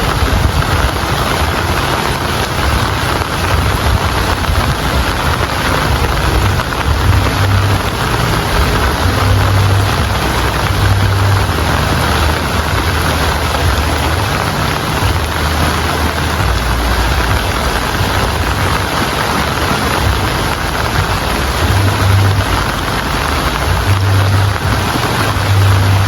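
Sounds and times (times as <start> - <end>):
heavy rain falling: 0.0 - 26.0
low rumble: 0.0 - 26.0.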